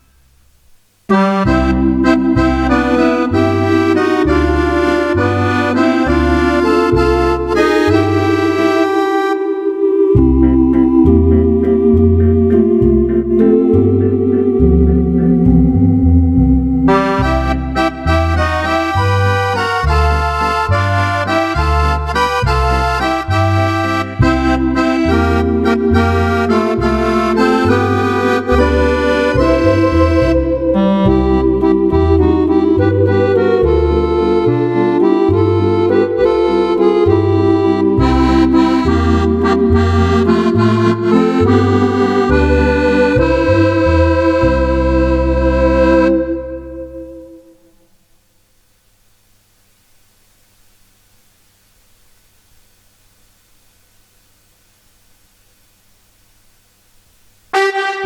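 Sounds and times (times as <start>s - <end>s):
accordion playing a tune: 1.1s - 47.6s, 57.5s - 58.0s.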